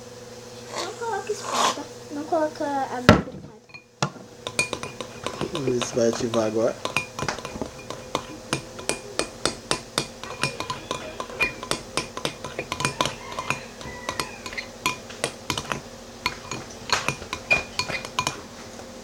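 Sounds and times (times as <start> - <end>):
spoon stirring slime in a bowl: 3.7 - 18.5.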